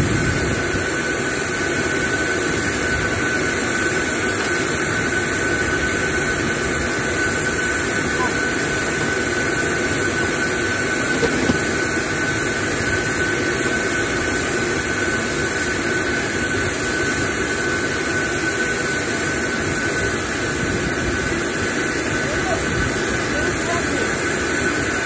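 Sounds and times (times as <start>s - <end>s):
aircraft turbine whine: 0.0s - 25.0s
high-pitched tones: 8.1s - 8.8s.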